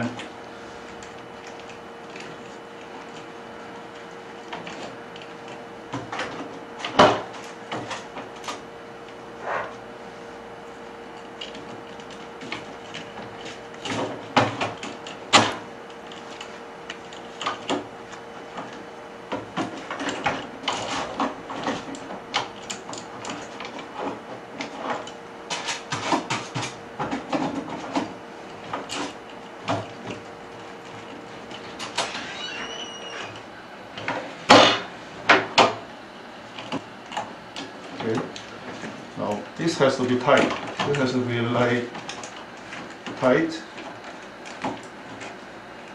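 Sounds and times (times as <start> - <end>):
curtain track parts clicking and scraping: 0.9 - 3.3, 3.9 - 8.6, 11.2 - 18.8, 19.6 - 34.3.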